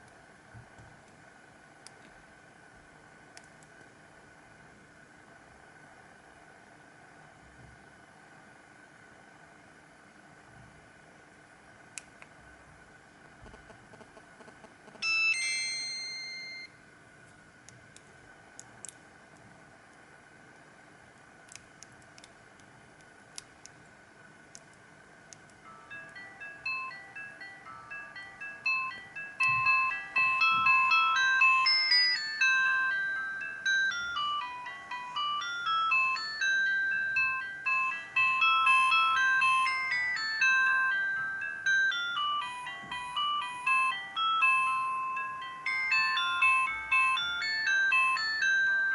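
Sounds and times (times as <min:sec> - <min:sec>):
two-note electronic ringtone: 0:15.0 - 0:16.8, 0:25.7 - 0:48.9.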